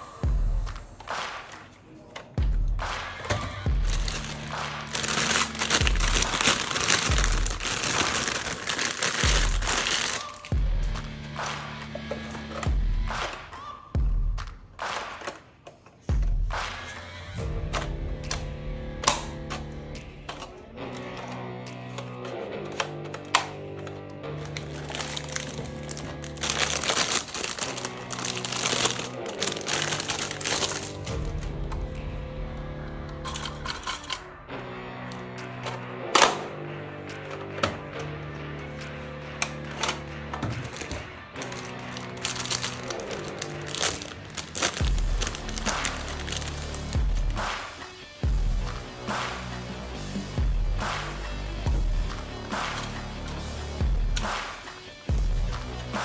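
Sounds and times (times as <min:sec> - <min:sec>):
music with deep bass beat: 0:00.0 - 0:01.5, 0:02.4 - 0:15.0, 0:16.1 - 0:56.0
packaging crinkling and rustling: 0:03.7 - 0:10.9, 0:22.2 - 0:31.5, 0:39.4 - 0:47.7.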